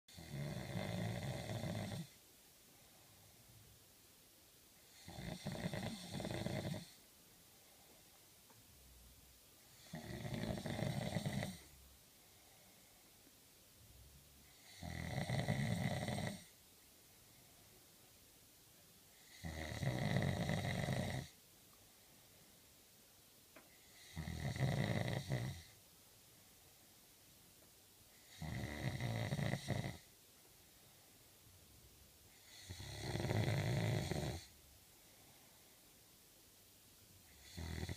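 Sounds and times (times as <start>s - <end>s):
person snoring: 0.1s - 2.2s, 4.9s - 7.0s, 9.7s - 11.7s, 14.5s - 16.5s, 19.2s - 21.4s, 23.8s - 25.8s, 28.2s - 30.1s, 32.4s - 34.6s, 37.3s - 37.9s
quiet breathing: 0.1s - 3.8s, 4.7s - 23.0s, 23.6s - 27.2s, 28.0s - 36.4s.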